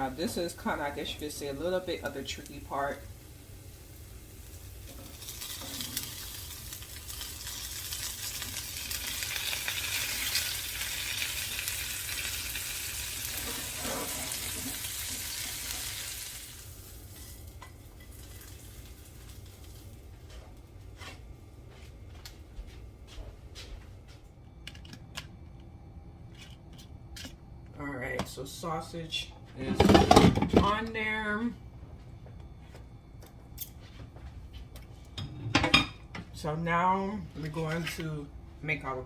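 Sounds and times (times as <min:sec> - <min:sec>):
food sizzling in a frying pan: 0:00.0 - 0:20.1.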